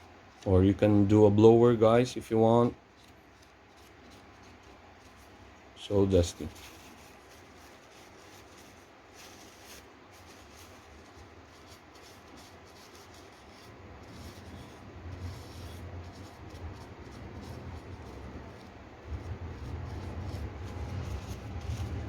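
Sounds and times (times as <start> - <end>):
tissue rubbing circuit board: 2.2 - 22.0
low rumble: 14.7 - 22.0.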